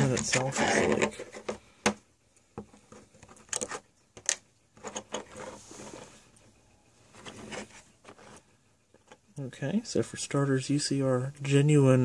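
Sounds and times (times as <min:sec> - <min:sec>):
rubbing scrapes of small parts: 0:00.0 - 0:01.7, 0:02.6 - 0:09.4.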